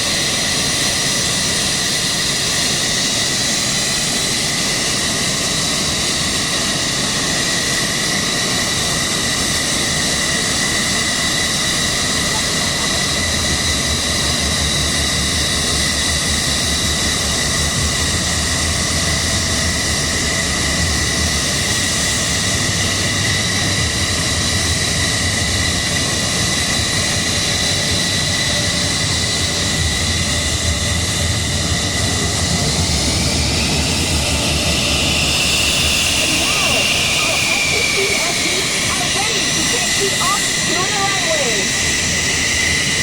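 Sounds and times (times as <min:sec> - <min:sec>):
jet engines whining: 0:00.0 - 0:43.0.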